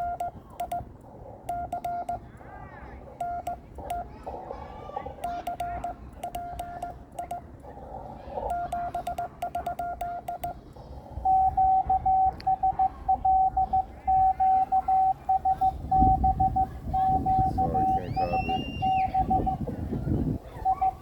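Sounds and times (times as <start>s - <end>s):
morse code tones: 0.0s - 0.9s, 1.5s - 2.3s, 3.1s - 4.2s, 5.2s - 7.6s, 8.4s - 10.6s, 11.2s - 21.0s.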